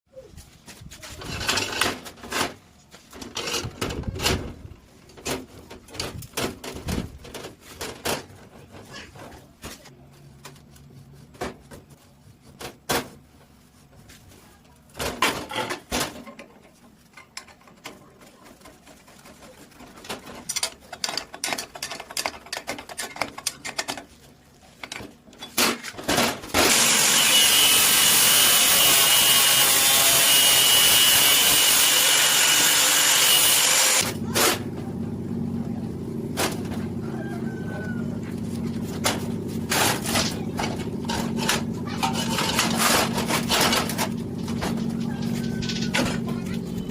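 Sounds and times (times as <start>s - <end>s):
power tool cutting: 26.6s - 34.2s
metal knocks and clanks: 38.9s - 46.9s.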